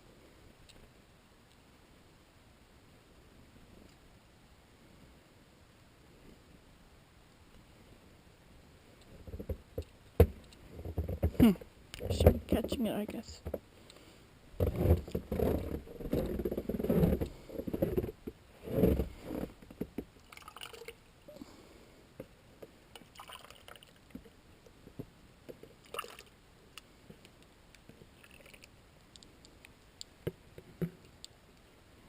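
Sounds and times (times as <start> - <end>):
rustling and scraping handling noise: 9.0 - 20.2
faint clicks: 26.7 - 31.7.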